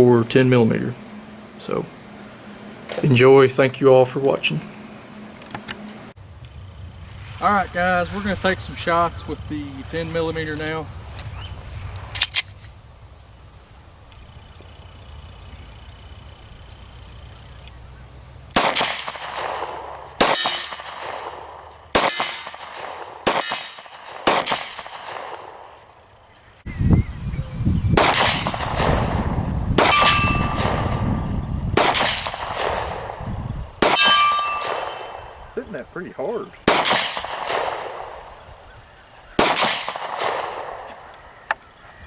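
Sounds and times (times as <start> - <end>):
pistol shots: 18.6 - 25.7, 28.0 - 29.2, 29.8 - 31.0, 31.8 - 33.2, 33.8 - 35.4, 36.6 - 38.4, 39.4 - 41.1
short metallic ring: 29.8 - 30.8, 33.9 - 35.2.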